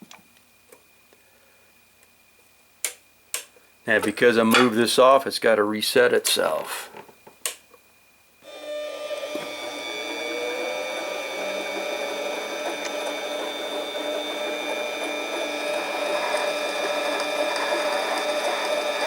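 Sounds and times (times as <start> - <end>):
gear train whirring: 8.4 - 19.0
lathe motor whining: 8.4 - 19.0.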